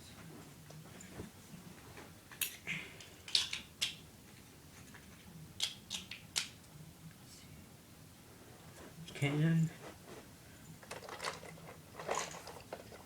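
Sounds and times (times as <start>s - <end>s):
plastic parts clicking: 10.8s - 13.0s.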